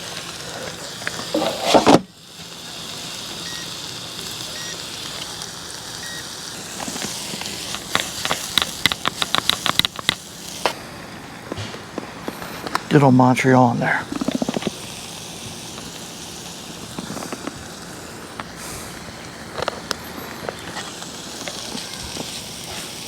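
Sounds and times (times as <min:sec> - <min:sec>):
food sizzling in a frying pan: 0:00.0 - 0:23.0
steady hiss: 0:00.0 - 0:23.0
sharp clicks: 0:07.0 - 0:10.3.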